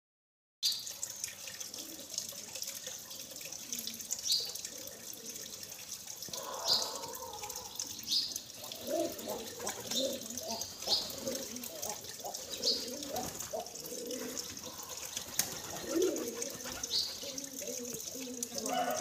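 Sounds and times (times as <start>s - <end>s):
tap water running and splashing: 0.6s - 19.0s
water plinks: 0.6s - 19.0s.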